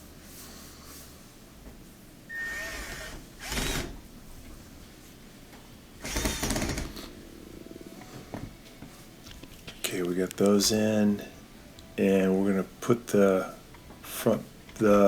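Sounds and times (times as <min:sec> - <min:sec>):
screwdriver whirring and clicking: 0:02.4 - 0:04.0, 0:06.0 - 0:07.1.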